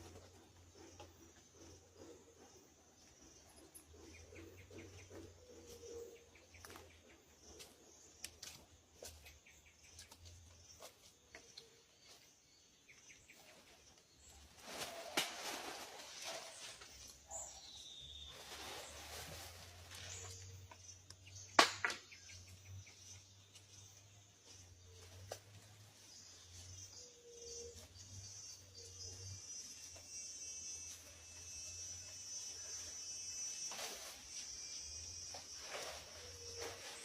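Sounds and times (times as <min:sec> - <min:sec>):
rustling: 0:13.4 - 0:20.9.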